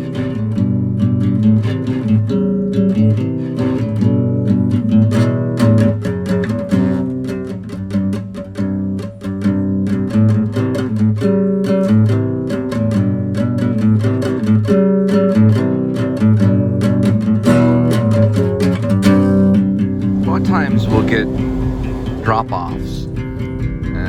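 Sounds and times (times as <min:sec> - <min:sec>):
acoustic guitar strumming: 0:00.0 - 0:24.0.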